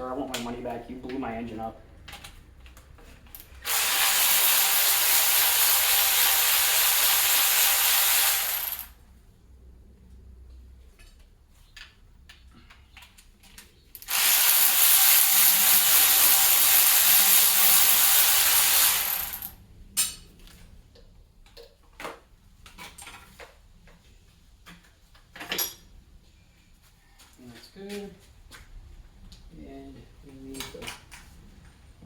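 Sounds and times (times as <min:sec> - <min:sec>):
clicks and knocks of tools: 0:02.0 - 0:03.5
compressed-air tool hissing: 0:03.5 - 0:08.9, 0:14.0 - 0:19.5.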